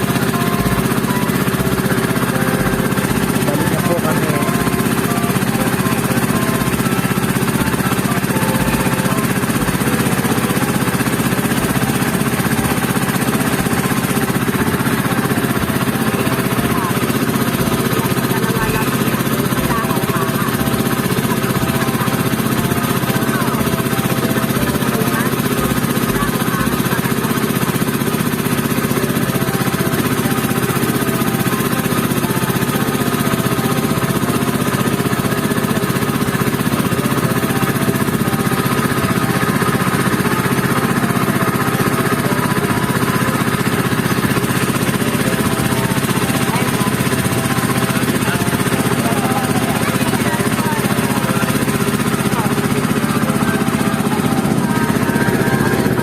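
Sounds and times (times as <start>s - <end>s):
boat engine running: 0.0s - 56.0s.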